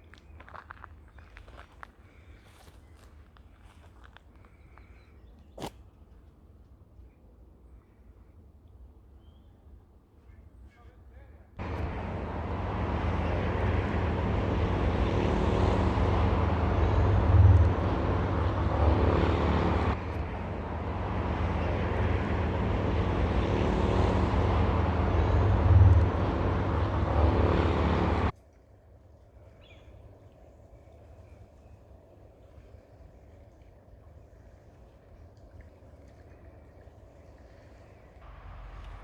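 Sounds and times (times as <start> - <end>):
ocean surf rushing: 11.6 - 28.3.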